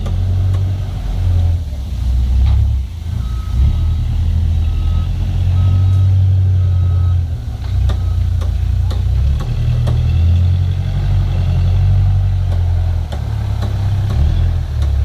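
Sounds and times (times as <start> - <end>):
heavy machine engine running: 0.0 - 15.0
reversing alarm beeping: 3.2 - 7.2, 8.0 - 8.3.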